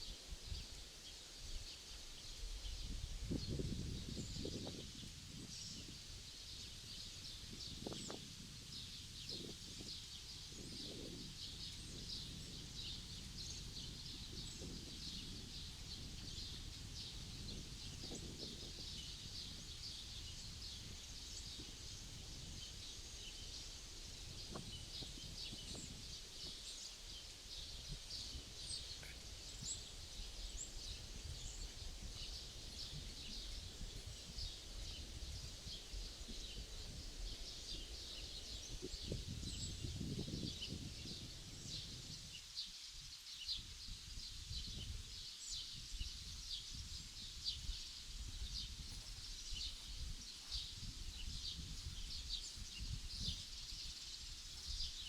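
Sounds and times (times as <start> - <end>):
small birds chirping: 0.0 - 55.0
wind rumble: 2.6 - 6.2, 7.1 - 26.8, 47.1 - 55.0.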